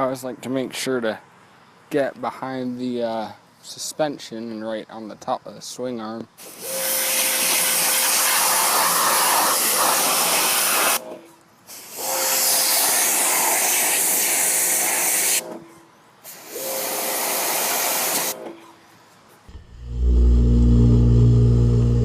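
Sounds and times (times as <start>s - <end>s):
pressure washer spray hissing: 6.4s - 11.0s, 11.7s - 15.4s, 16.2s - 18.4s
pump humming: 19.5s - 22.0s.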